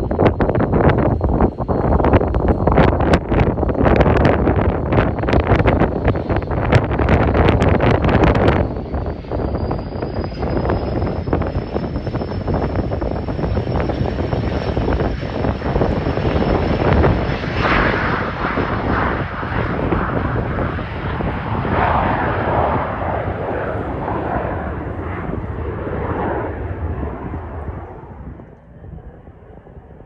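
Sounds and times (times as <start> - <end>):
jet engines rushing rumble: 0.0 - 30.0.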